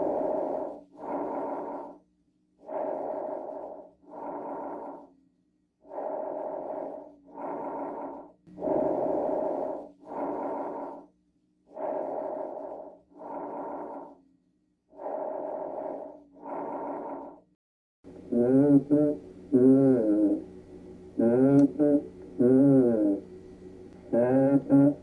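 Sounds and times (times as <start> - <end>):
breathing through stethoscope: 0.0 - 5.2, 5.8 - 11.1, 11.7 - 14.3, 14.9 - 17.5.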